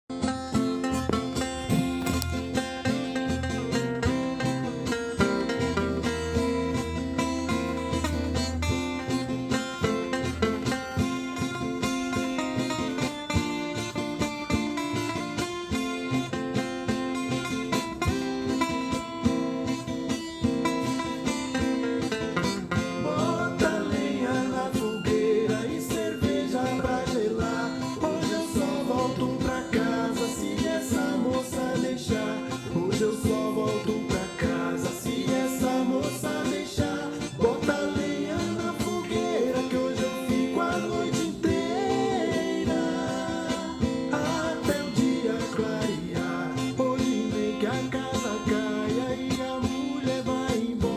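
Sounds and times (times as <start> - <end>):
instrumental music: 0.1 - 50.9
person singing: 22.8 - 50.9.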